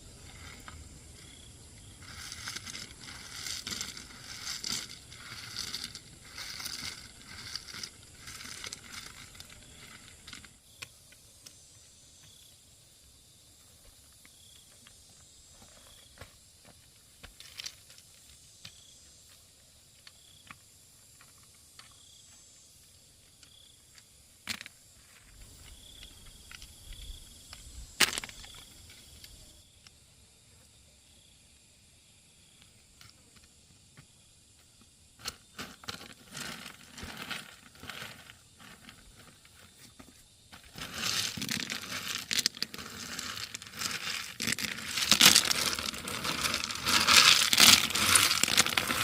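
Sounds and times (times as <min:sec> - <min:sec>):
rustling and scraping handling: 0:00.1 - 0:10.6, 0:35.2 - 0:49.0.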